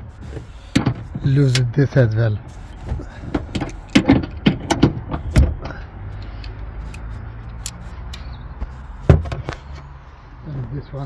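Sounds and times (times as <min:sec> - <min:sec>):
clicks and knocks of metal hardware: 0:02.8 - 0:08.2.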